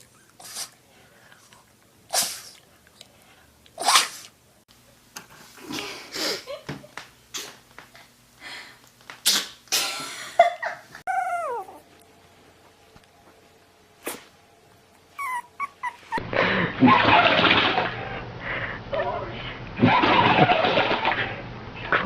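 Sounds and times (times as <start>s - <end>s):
dog sneezing: 2.1s - 2.6s, 3.8s - 4.3s, 9.2s - 9.9s, 14.0s - 14.3s
dog whining: 11.1s - 12.0s, 15.1s - 16.2s.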